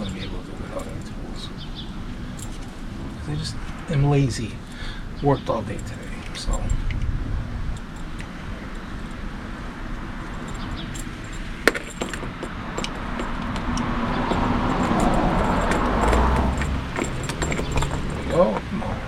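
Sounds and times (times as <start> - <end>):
rustling: 10.2 - 18.8
cable tie clicks and rattles: 10.3 - 18.7.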